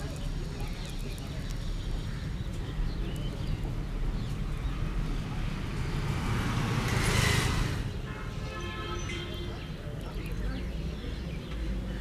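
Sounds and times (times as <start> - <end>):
vehicle passing: 5.1 - 8.1.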